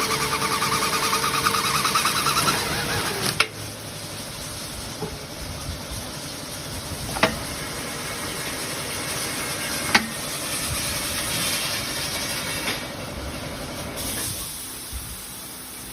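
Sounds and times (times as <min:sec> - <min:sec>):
machine humming and hissing: 0:00.0 - 0:15.9.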